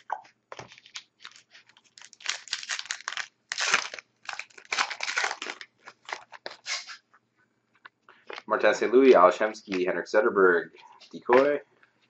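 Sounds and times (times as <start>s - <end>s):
card pack wrapper tearing and crinkling: 0.6s - 7.0s.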